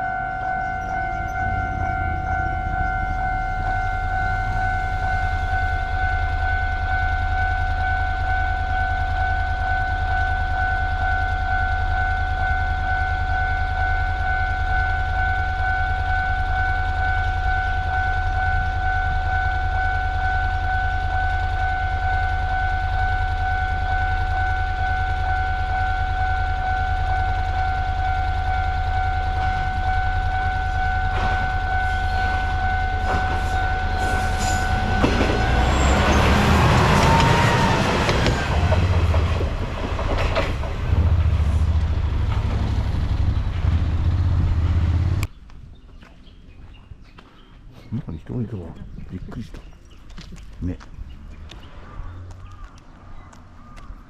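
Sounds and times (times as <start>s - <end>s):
level crossing warning bell: 0.0s - 42.4s
train knocks and clacks: 0.0s - 45.3s
low hum: 0.0s - 45.8s.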